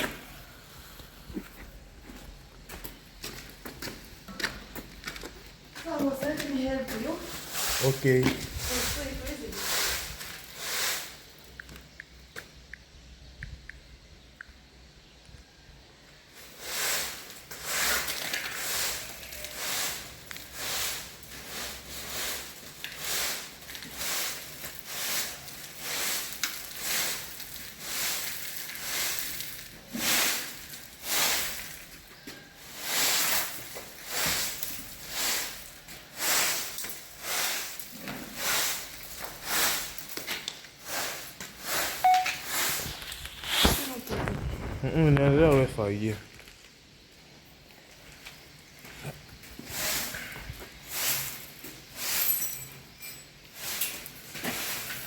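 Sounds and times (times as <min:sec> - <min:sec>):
broom sweeping floor: 0:05.6 - 0:11.5, 0:16.2 - 0:44.4, 0:48.0 - 0:55.0.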